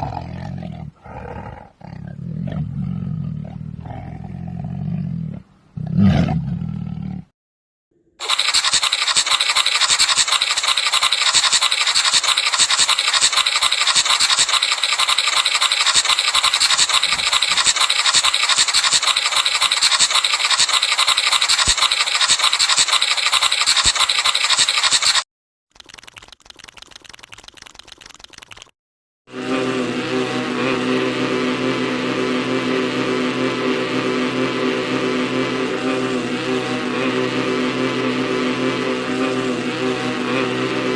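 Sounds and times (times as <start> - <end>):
fine-grained scratching: 8.2 - 25.2.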